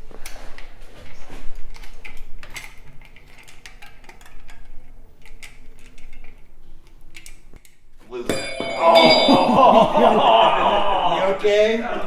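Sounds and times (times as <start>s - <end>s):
metal clinks of bike parts and tools: 8.3s - 10.2s.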